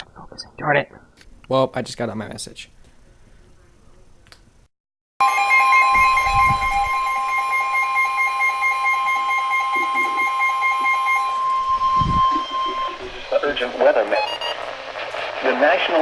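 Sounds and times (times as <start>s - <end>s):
loud steady alarm tone: 5.2s - 15.5s
lower second tone: 5.3s - 14.7s.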